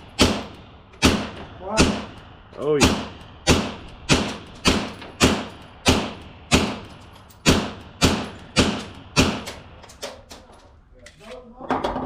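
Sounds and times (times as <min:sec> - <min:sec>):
suppressed pistol shots: 0:00.2 - 0:09.7.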